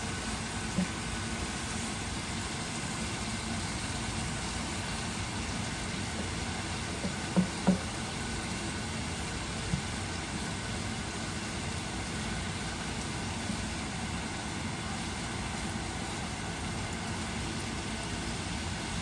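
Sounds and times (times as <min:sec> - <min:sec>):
chicken sizzling in a pan: 0:00.0 - 0:19.0
soft knocks: 0:07.0 - 0:07.9.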